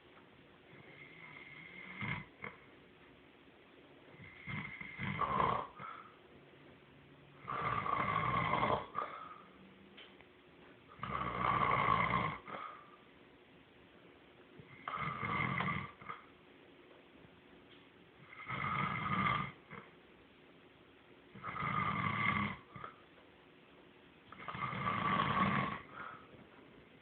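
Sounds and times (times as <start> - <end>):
person snoring: 0.7 - 2.6, 4.2 - 6.1, 7.4 - 9.4, 11.0 - 12.8, 14.7 - 16.3, 18.2 - 19.9, 21.4 - 23.0, 24.4 - 26.2.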